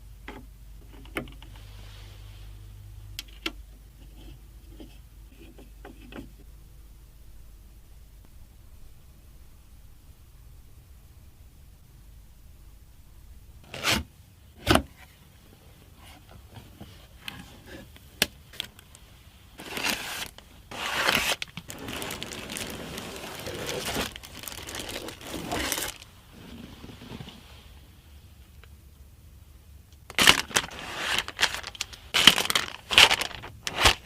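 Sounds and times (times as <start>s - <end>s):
packing material crinkling and tearing: 19.6s - 26.6s, 30.1s - 34.0s.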